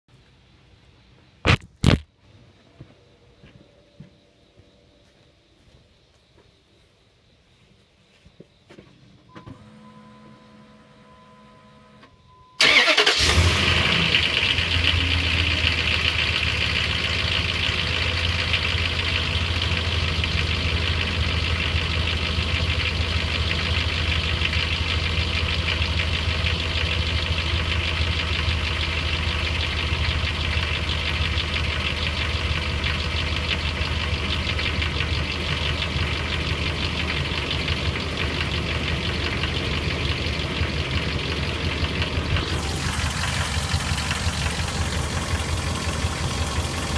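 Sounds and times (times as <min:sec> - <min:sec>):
truck engine starting and idling: 0:09.4 - 0:46.9
rapid engine knocking: 0:26.2 - 0:46.9.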